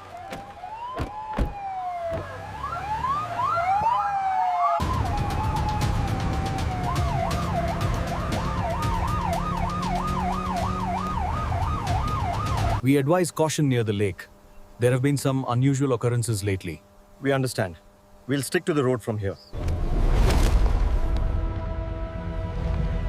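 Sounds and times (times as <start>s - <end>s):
rising siren sweeps: 0.0s - 12.8s
yelping siren wail: 0.0s - 12.8s.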